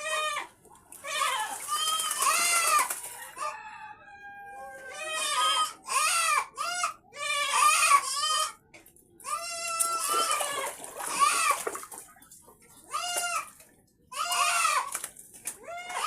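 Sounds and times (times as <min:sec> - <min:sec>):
farm animals bleating: 0:00.0 - 0:03.5, 0:04.7 - 0:08.6, 0:09.2 - 0:11.6, 0:12.7 - 0:14.9, 0:15.6 - 0:16.0.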